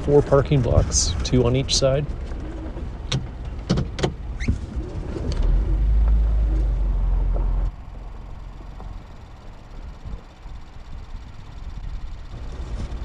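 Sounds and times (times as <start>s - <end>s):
vehicle knocks and rattles: 0.0s - 5.4s
heavy low rumble: 0.0s - 13.0s.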